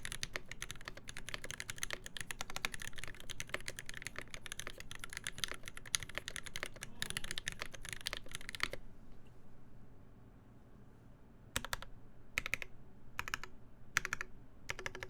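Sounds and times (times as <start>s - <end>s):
fast typing on mechanical keyboard: 0.0s - 8.8s, 11.6s - 15.0s.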